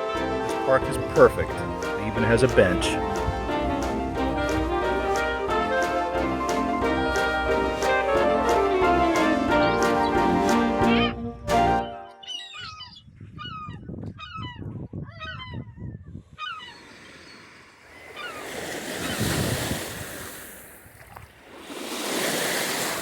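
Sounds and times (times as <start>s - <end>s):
waves washing on shore: 0.0s - 11.0s, 16.8s - 23.0s
waterbirds honking: 0.0s - 13.0s, 16.4s - 19.8s.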